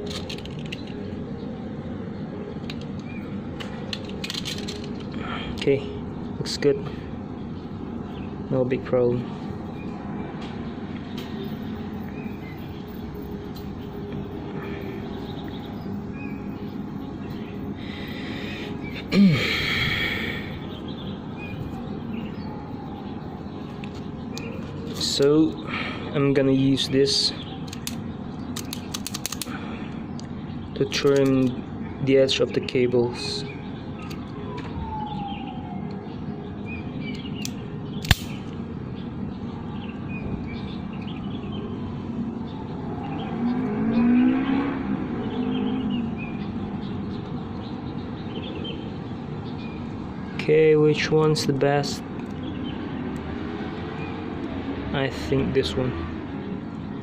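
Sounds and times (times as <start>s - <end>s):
man sighing: 17.9s - 20.6s
wire cutter snipping cable: 37.4s - 38.4s
passing vehicle engine hum: 37.6s - 47.6s.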